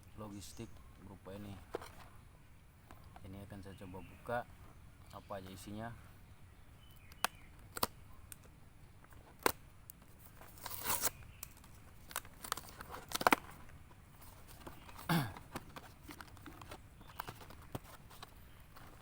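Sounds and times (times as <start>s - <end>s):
sharp clicks: 7.0s - 8.6s
packaging tearing and crinkling: 10.2s - 19.0s.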